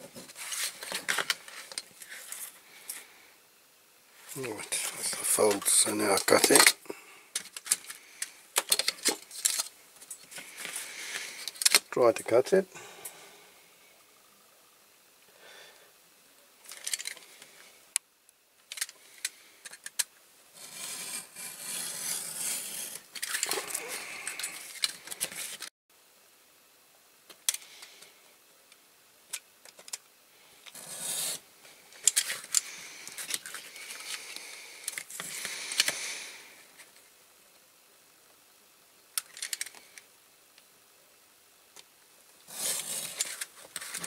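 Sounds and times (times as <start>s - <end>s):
card rustling and scraping: 0.0s - 3.0s, 4.3s - 6.8s, 7.4s - 11.9s, 16.6s - 17.5s, 18.7s - 25.7s, 30.7s - 36.9s, 42.4s - 44.0s.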